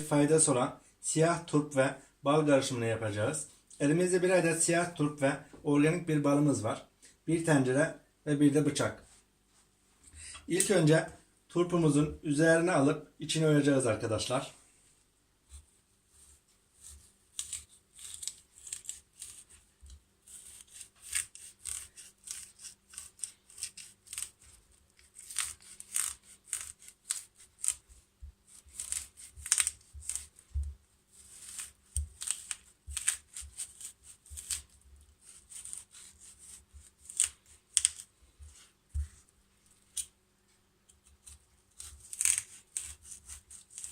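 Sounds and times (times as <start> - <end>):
knife scraping radish: 15.5 - 40.1, 40.9 - 43.9.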